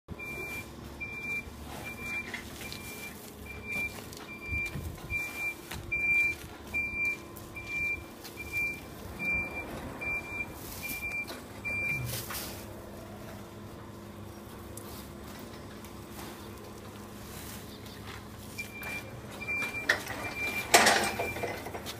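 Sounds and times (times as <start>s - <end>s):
reversing alarm beeping: 0.1s - 12.3s, 18.5s - 21.8s.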